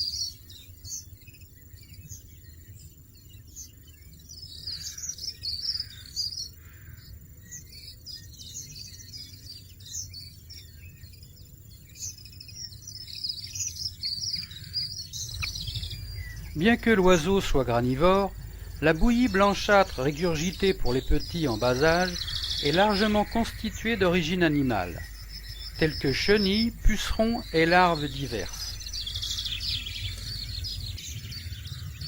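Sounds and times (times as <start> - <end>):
finches twittering: 0.0 - 32.0.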